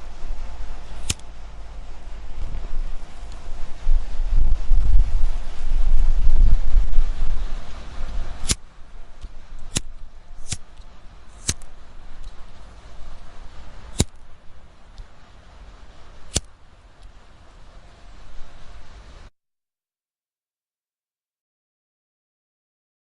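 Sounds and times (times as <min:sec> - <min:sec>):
sharp clicks: 0:09.2 - 0:12.4.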